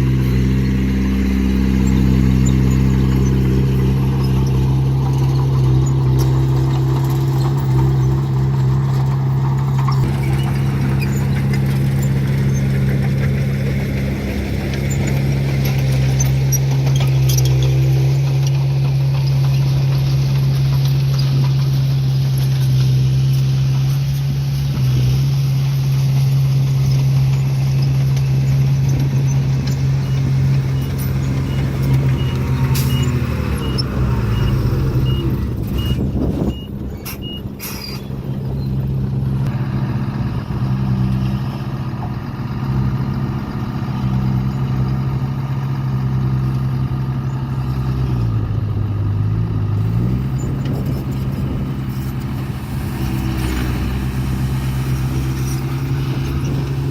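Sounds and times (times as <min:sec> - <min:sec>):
heavy diesel engine running: 0:00.0 - 0:56.9
reversing alarm beeping: 0:30.8 - 0:37.5.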